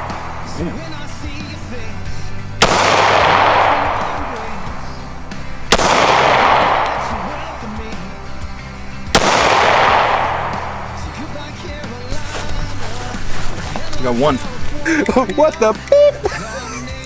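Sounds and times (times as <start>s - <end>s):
pistol shots with echo: 0.0s - 11.9s
background music: 0.0s - 17.0s.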